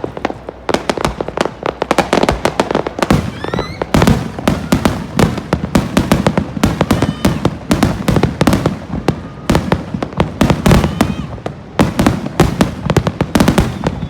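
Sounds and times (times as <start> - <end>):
fireworks bangs and crackles: 0.0 - 14.0
rising firework whistle: 2.1 - 5.5, 6.6 - 14.0.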